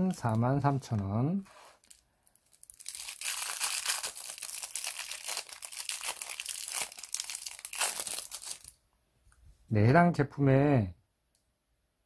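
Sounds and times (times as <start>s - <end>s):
packaging crinkling: 1.6s - 8.8s.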